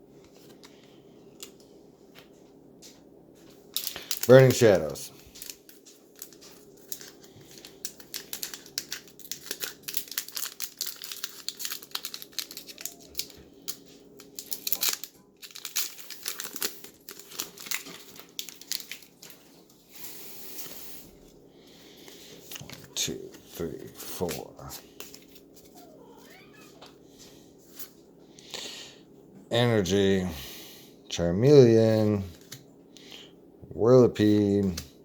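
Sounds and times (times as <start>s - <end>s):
foil wrapper crinkling and tearing: 3.5s - 21.4s, 22.0s - 26.8s.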